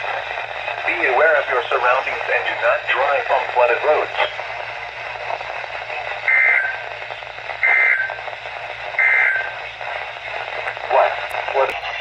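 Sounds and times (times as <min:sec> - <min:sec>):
radio hiss: 0:00.0 - 0:12.0.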